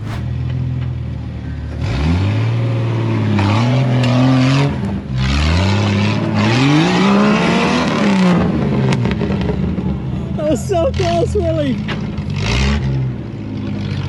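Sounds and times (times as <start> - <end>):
rough rushing noise: 0.0 - 0.3
off-road vehicle engine revving: 1.8 - 9.4, 12.2 - 14.0.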